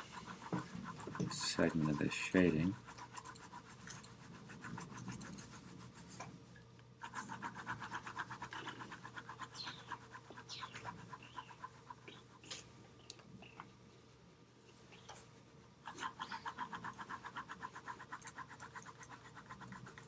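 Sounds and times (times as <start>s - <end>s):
pencil scratching on paper: 0.0s - 6.2s, 7.0s - 12.4s, 15.9s - 20.0s.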